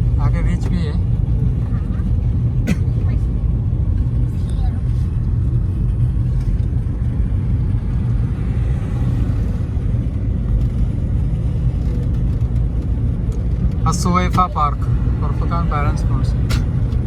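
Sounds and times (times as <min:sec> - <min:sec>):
car engine rumble: 0:00.0 - 0:17.0
road noise: 0:00.0 - 0:17.0.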